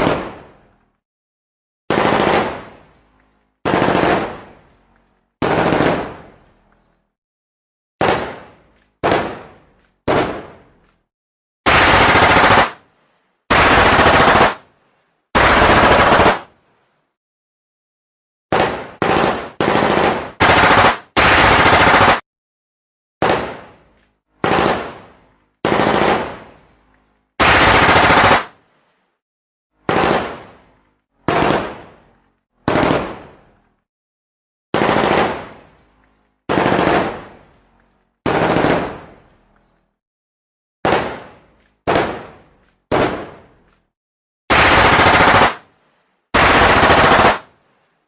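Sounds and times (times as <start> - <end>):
automatic gunfire bursts: 1.9 - 2.7, 3.6 - 4.4, 5.4 - 6.2, 11.7 - 12.8, 13.5 - 14.6, 15.4 - 16.5, 18.5 - 22.2, 24.4 - 25.0, 25.6 - 26.4, 27.4 - 28.5, 31.3 - 31.7, 32.7 - 33.2, 34.8 - 35.5, 36.5 - 37.2, 38.2 - 39.0, 44.5 - 45.6, 46.4 - 47.5.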